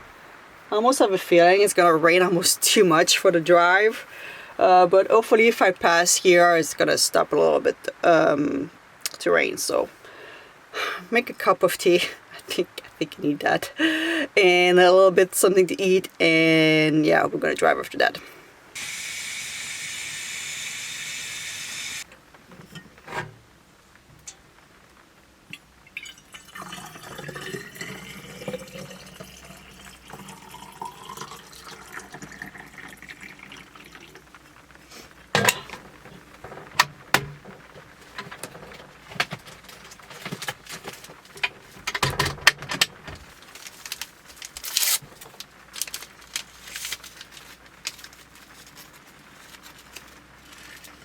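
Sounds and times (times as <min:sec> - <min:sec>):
knocks and clatters of objects: 0:22.1 - 0:23.5, 0:35.3 - 0:45.4
water pouring into a container: 0:25.9 - 0:34.5.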